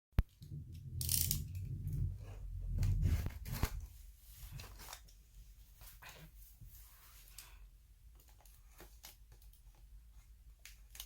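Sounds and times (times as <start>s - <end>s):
low rumble of box moving: 0.2s - 4.7s
rustling: 0.3s - 7.6s.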